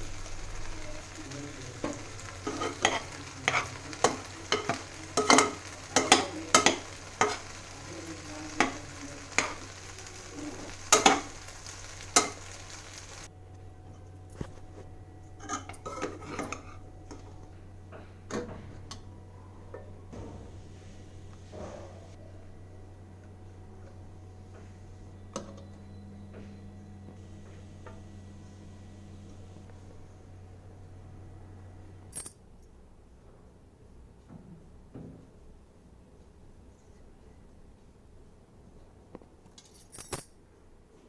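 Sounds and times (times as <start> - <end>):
fat sizzling: 0.0 - 13.3
spoon scraping a cooking pan: 1.5 - 13.3, 15.4 - 16.8.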